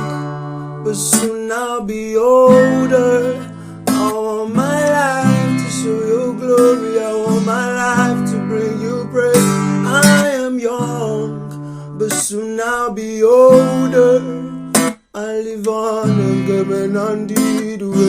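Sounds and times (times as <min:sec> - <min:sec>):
acoustic guitar strumming: 0:00.0 - 0:18.0
person singing: 0:00.0 - 0:18.0.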